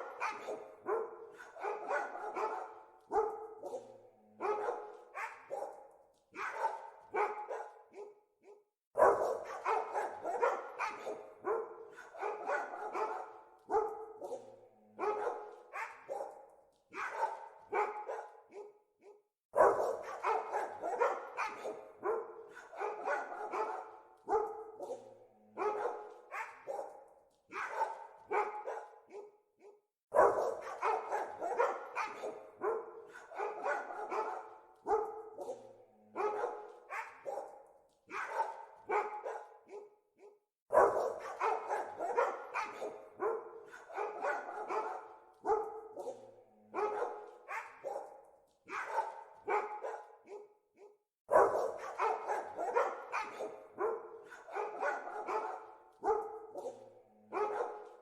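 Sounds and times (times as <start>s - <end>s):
dogs barking: 0.0s - 58.0s.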